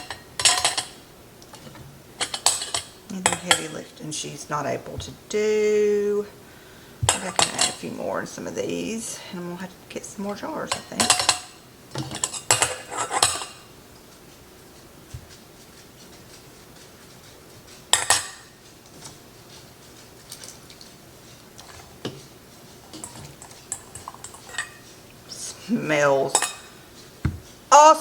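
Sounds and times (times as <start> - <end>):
metal utensil clinking on glass jars: 0.0 - 1.0, 2.2 - 3.8, 10.7 - 13.6, 22.9 - 24.8
light taps: 27.2 - 27.6.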